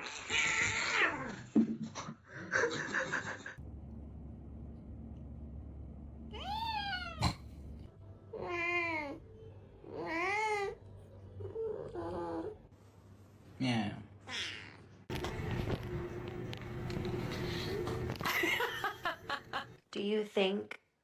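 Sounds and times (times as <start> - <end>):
cat meowing: 6.3 - 7.3.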